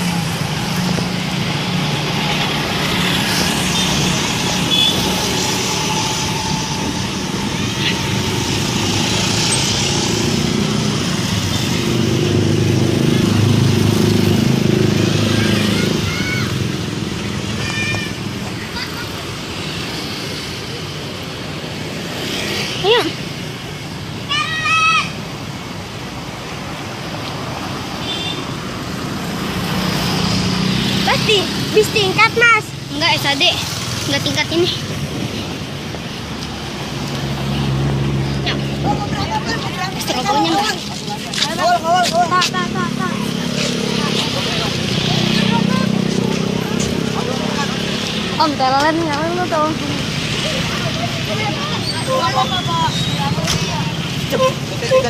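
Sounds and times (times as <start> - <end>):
road noise: 0.0 - 55.0.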